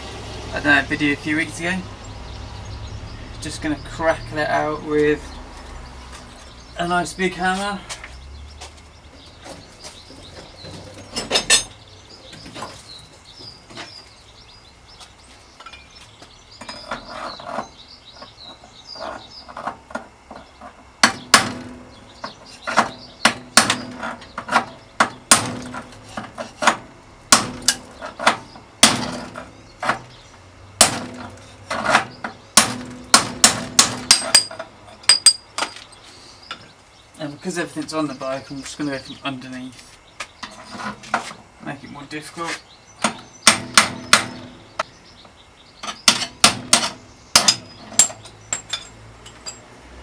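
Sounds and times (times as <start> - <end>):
hammer striking metal: 21.0 - 21.8, 22.8 - 25.8, 26.6 - 30.0, 30.8 - 35.7, 43.0 - 44.5, 45.9 - 49.6.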